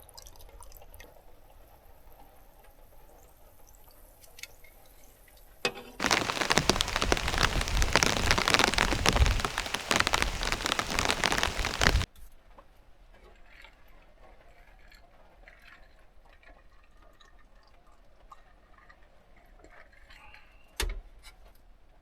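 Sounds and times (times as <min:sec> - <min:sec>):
water spraying hard: 0:06.0 - 0:12.1.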